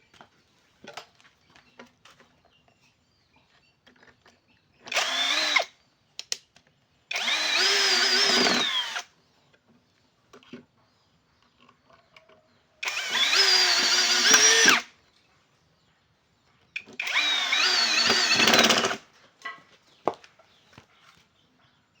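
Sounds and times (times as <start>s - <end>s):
power tool motor whine: 4.9s - 5.7s, 7.1s - 9.0s, 12.8s - 14.8s, 17.0s - 19.0s.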